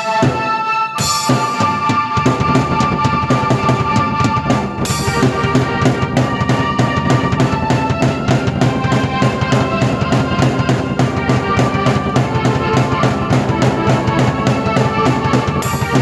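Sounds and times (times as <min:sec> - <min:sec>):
drum kit steady beat: 0:00.0 - 0:16.0
keyboard chords and melody: 0:00.0 - 0:16.0.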